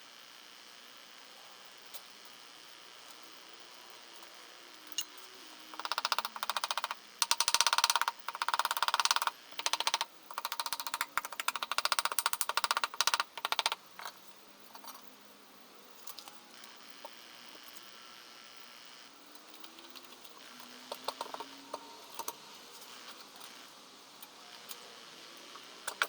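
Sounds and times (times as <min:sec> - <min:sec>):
socket ratchet clicking: 0:05.8 - 0:14.1.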